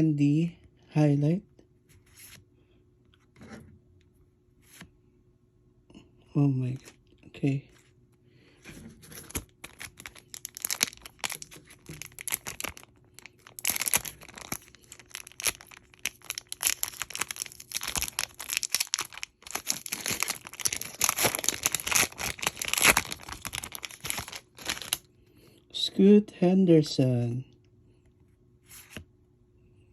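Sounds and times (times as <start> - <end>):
wrapper tearing and crinkling: 9.1 - 25.0.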